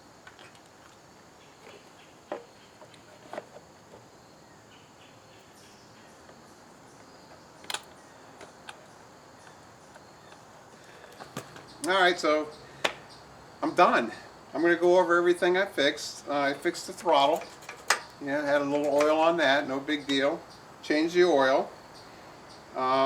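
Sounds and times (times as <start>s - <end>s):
insects chirring: 0.0s - 23.0s
tools clicking and tapping: 17.3s - 18.2s.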